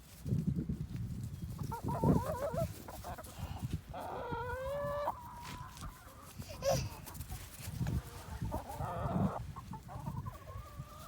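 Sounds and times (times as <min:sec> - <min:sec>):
chickens squawking: 0:01.6 - 0:07.5, 0:08.1 - 0:11.0.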